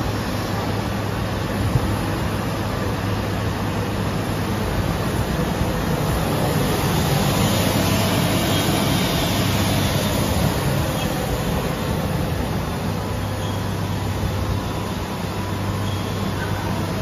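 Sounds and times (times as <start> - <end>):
grinding machine running: 3.6 - 17.0.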